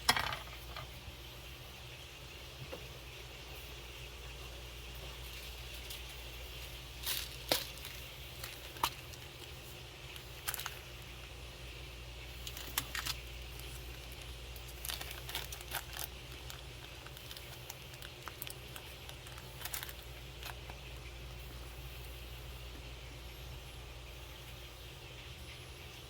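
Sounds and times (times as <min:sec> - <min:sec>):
tools and small parts rattling: 0:00.0 - 0:00.9, 0:07.0 - 0:09.6, 0:10.4 - 0:10.8, 0:12.4 - 0:20.8.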